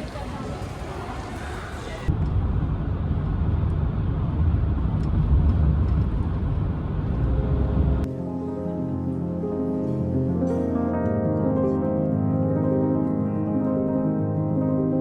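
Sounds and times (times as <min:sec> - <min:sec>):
vehicle rumble from inside: 0:02.0 - 0:08.1
piano music: 0:07.2 - 0:15.0.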